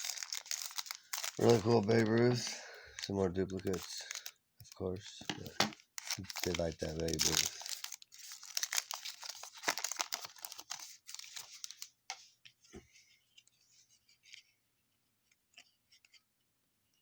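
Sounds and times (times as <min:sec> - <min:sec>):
wrapper tearing and crumpling: 0:00.0 - 0:04.3, 0:05.9 - 0:11.9
cards rustling and clicking: 0:00.0 - 0:16.4.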